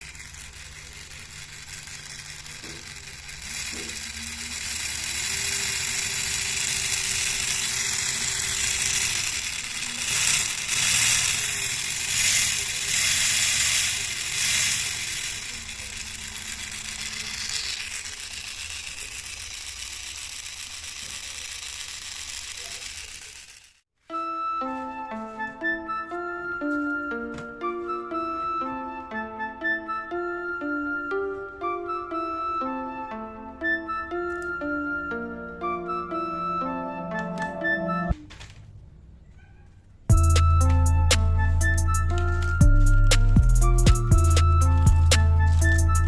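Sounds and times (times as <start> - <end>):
model engine rattling and whirring: 0.0 - 23.9, 44.0 - 46.0
music: 24.0 - 38.2, 40.1 - 46.0.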